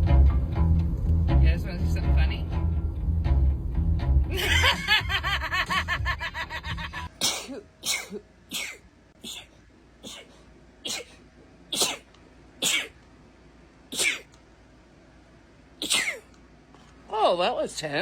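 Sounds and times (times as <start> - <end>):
woman sneezing: 7.2 - 10.3, 10.9 - 13.0, 13.9 - 14.3, 15.8 - 16.3.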